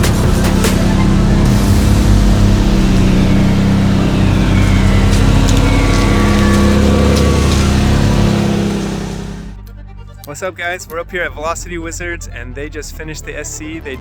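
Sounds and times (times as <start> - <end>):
car engine while driving: 0.0 - 9.6.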